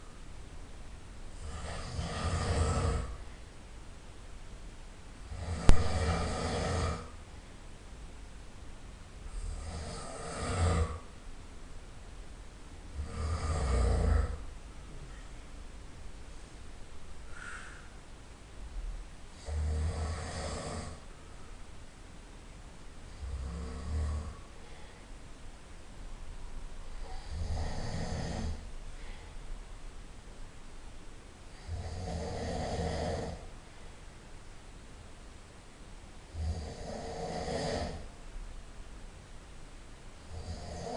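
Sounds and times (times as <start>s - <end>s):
quiet breathing: 1.3s - 3.5s, 5.2s - 7.6s, 12.9s - 21.8s, 23.0s - 29.9s, 31.5s - 34.3s
person snoring loudly: 1.4s - 3.2s, 5.3s - 7.2s, 9.3s - 11.1s, 12.9s - 14.5s, 19.4s - 21.0s, 23.1s - 24.5s, 26.9s - 28.6s, 31.5s - 33.5s, 36.3s - 38.1s, 40.2s - 40.9s.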